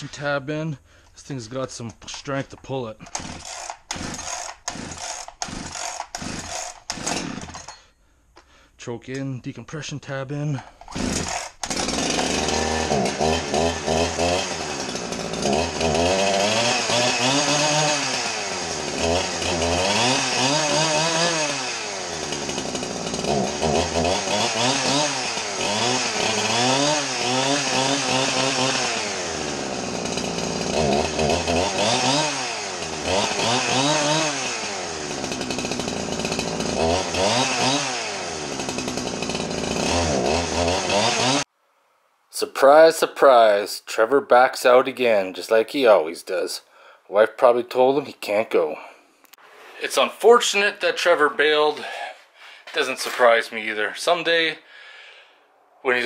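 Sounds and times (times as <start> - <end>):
chainsaw engine revving: 3.0 - 7.9, 10.8 - 41.5.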